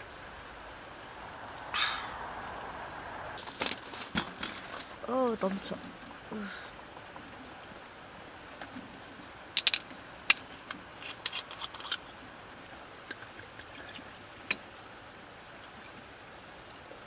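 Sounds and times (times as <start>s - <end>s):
faint steady hiss: 0.0s - 17.0s
hard objects clicking and clinking: 9.6s - 9.9s.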